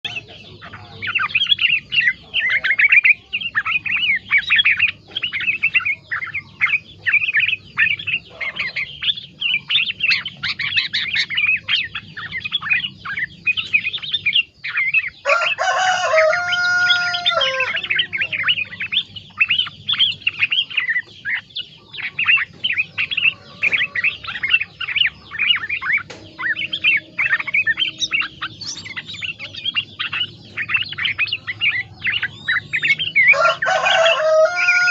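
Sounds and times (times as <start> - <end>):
bird singing chattering phrases: 0.0 - 34.9
rooster crowing: 15.2 - 18.6, 31.6 - 34.9.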